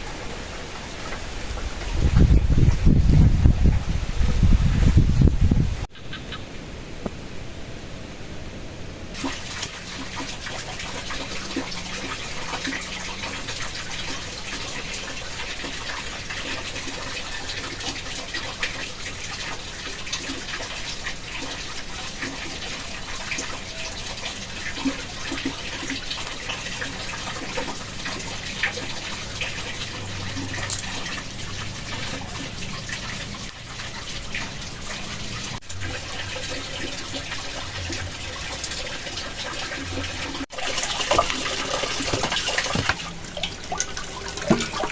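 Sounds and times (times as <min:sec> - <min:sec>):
small drips and ticks: 0:00.0 - 0:05.0, 0:09.2 - 0:44.9
rushing water: 0:09.1 - 0:44.9.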